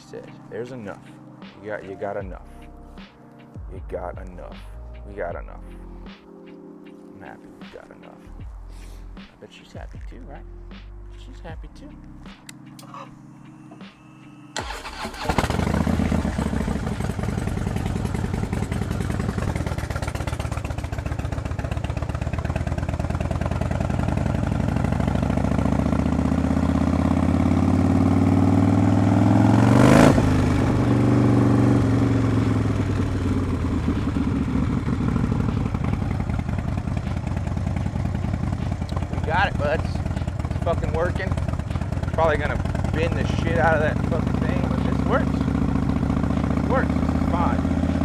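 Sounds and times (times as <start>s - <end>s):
motorcycle engine running: 14.6s - 48.0s.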